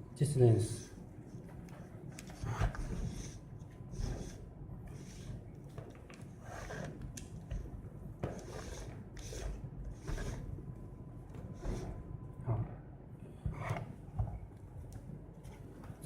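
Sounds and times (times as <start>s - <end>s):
soft scrapes of parts: 1.3s - 5.4s, 6.2s - 10.6s, 11.4s - 12.0s.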